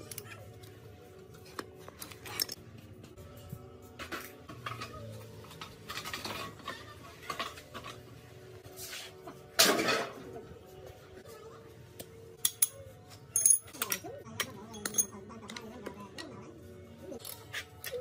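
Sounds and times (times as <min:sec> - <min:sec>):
metal tools clinking: 0:12.4 - 0:14.0, 0:14.7 - 0:15.2.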